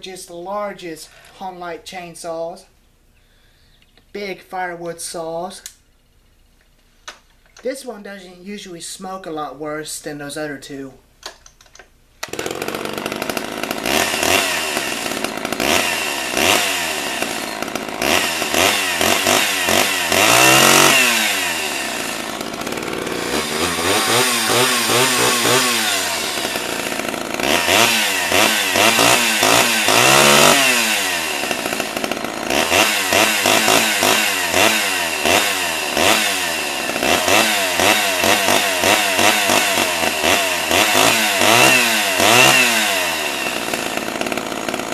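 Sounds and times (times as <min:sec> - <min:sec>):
chainsaw revving: 0:12.2 - 0:44.9.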